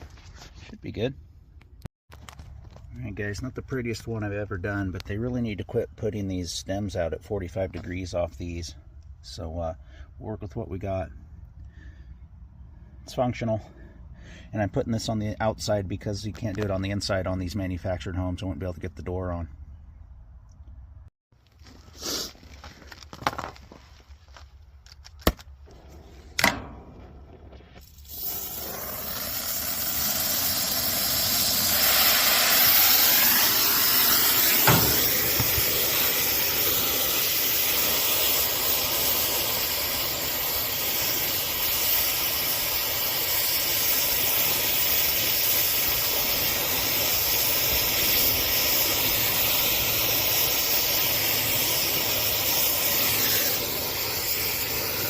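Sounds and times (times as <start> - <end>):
pressurized gas hissing: 21.8 - 22.5, 25.7 - 55.0.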